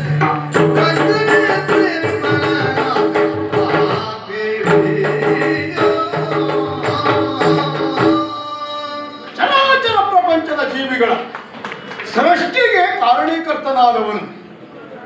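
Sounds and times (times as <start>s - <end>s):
rapid hand-drum strokes: 0.0s - 8.4s.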